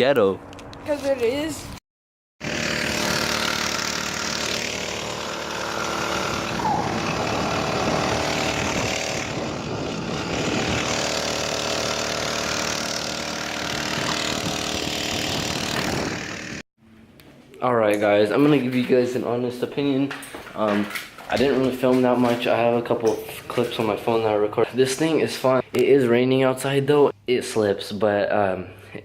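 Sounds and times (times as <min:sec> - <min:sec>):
small gas engine running: 0:02.4 - 0:16.6.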